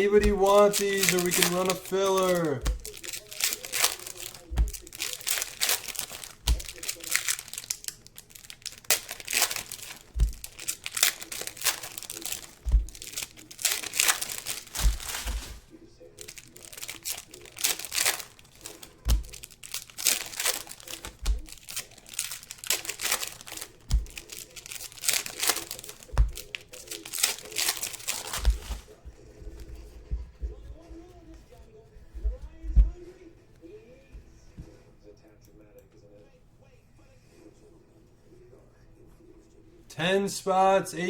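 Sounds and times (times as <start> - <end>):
plastic wrapping crinkling and tearing: 0.0 - 30.6.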